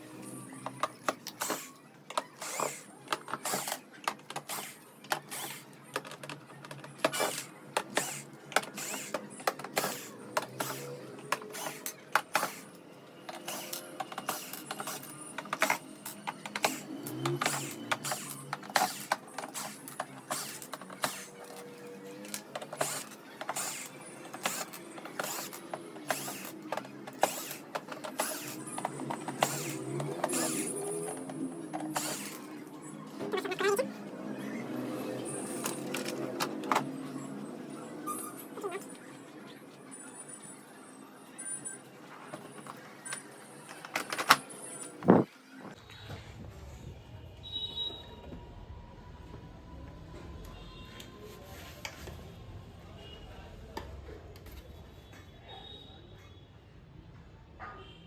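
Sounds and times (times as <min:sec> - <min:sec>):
screws and tools rattling: 0:00.6 - 0:33.8.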